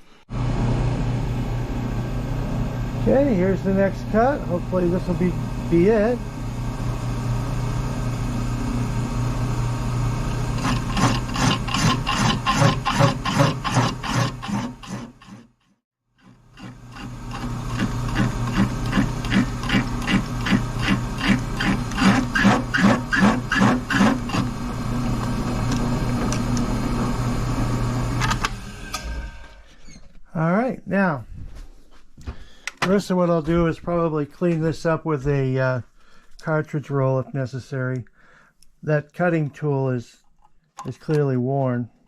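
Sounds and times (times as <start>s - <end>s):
machine spindle turning: 10.3s - 15.5s, 16.2s - 27.6s
cutter chattering: 10.6s - 15.4s, 16.6s - 24.5s.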